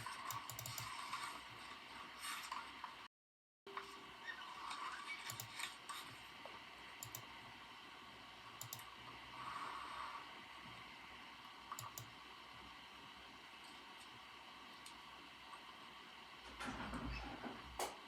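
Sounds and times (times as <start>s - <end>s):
keyboard keys clicking: 0.3s - 0.9s, 5.3s - 5.6s, 8.6s - 8.8s, 11.8s - 12.1s.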